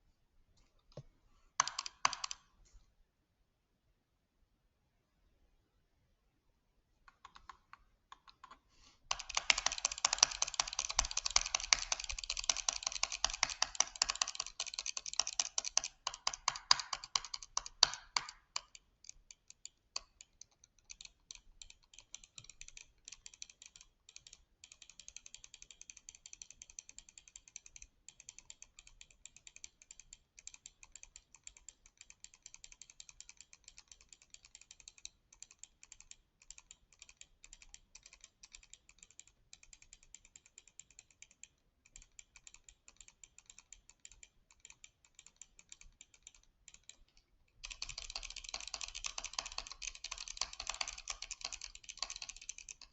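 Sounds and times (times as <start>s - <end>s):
rapid clicking: 7.1s - 52.9s.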